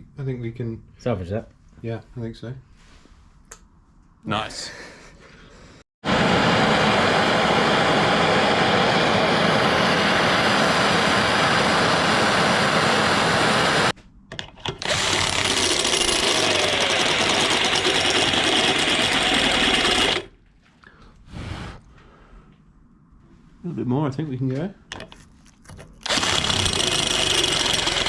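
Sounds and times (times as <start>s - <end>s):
power drill running: 6.1s - 13.9s, 14.8s - 20.3s, 26.0s - 28.0s.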